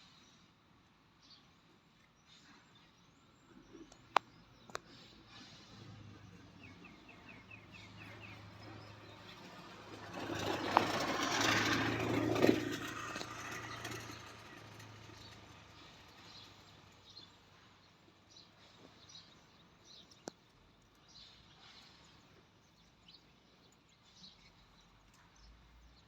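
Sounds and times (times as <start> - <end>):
vehicle passing by: 5.3 - 17.5.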